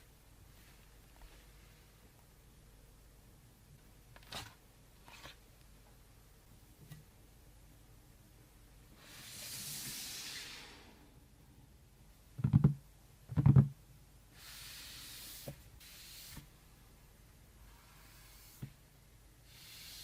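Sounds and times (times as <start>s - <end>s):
soft rustling: 0.4s - 2.1s.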